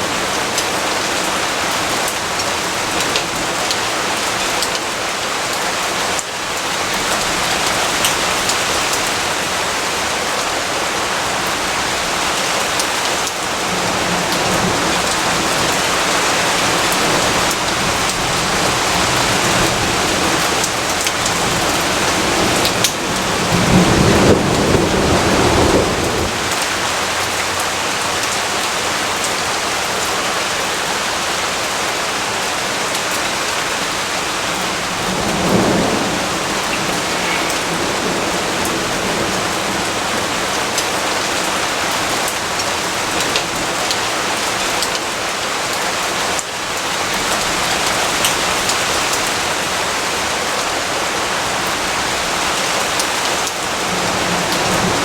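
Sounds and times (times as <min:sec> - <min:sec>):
steady rain: 0:00.0 - 0:55.0
distant thunder rumble: 0:13.5 - 0:27.4, 0:34.1 - 0:41.3.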